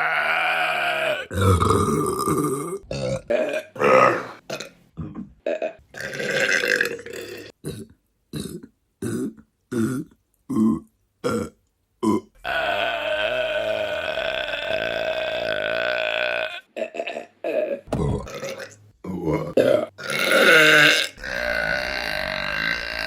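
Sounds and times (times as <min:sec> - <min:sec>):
woman burping: 0:14.7 - 0:23.0.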